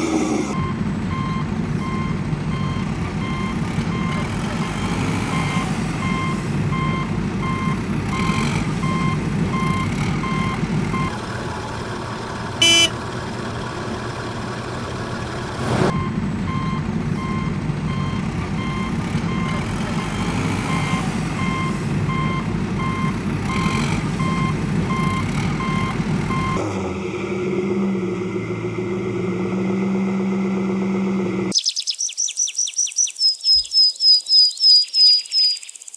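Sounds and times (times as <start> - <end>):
reversing alarm beeping: 0.5 - 11.1, 12.6 - 12.9, 15.9 - 26.6
heavy machine engine running: 0.5 - 26.6.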